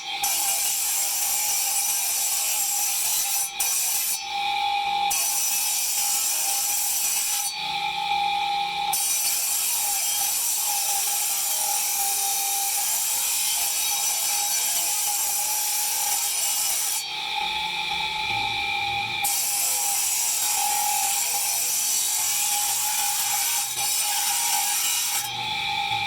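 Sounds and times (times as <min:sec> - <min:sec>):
grinder scraping marble: 0:09.0 - 0:17.0, 0:19.2 - 0:26.0
grinder motor whining: 0:22.1 - 0:26.0.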